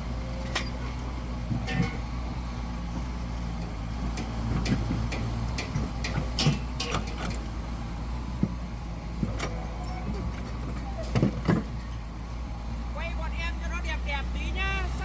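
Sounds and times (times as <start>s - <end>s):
heavy machine engine running: 0.0s - 15.0s.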